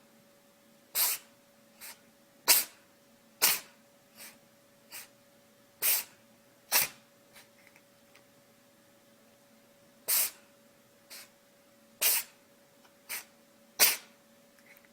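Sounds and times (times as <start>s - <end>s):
small pet sneezing: 0.9s - 5.2s, 5.8s - 7.5s, 10.1s - 10.5s, 11.1s - 11.4s, 12.0s - 12.4s, 13.0s - 14.2s.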